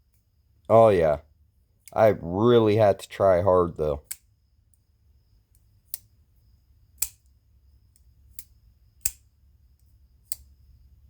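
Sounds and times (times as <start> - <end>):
pocket knife clicking open and shut: 5.9 - 6.1, 7.0 - 7.3, 8.0 - 9.2, 10.2 - 10.5.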